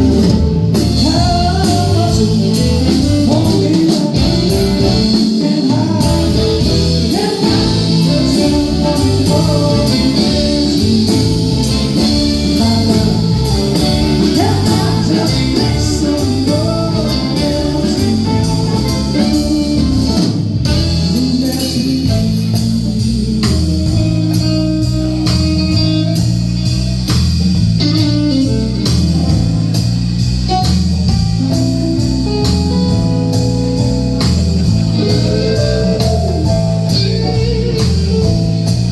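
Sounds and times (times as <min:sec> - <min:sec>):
drum beat: 0:00.0 - 0:24.3, 0:26.2 - 0:38.9
person singing: 0:00.0 - 0:26.2, 0:33.8 - 0:38.9
bass: 0:00.0 - 0:38.9
guitar: 0:00.0 - 0:38.9.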